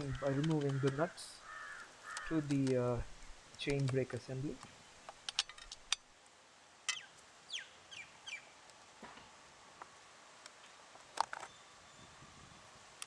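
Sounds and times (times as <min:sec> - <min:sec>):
birds chirping: 0:00.0 - 0:06.0
faint metallic clicks: 0:00.0 - 0:06.0.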